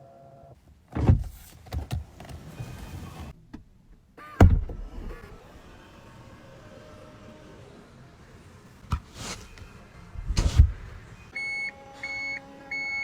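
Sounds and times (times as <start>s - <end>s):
electronic warning beeps: 11.3s - 13.0s.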